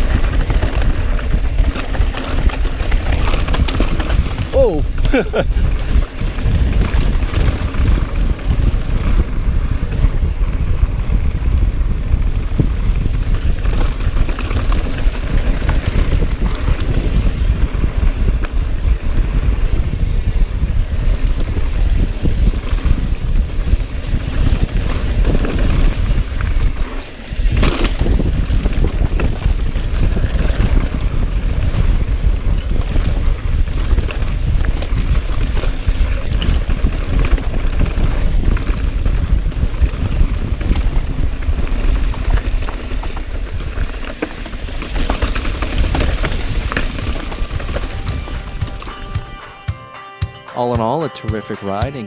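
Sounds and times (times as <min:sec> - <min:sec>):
bike rattling over rough trail: 0:00.0 - 0:49.4
wind buffeting microphone: 0:00.0 - 0:49.4
sharp knock: 0:47.1 - 0:51.1.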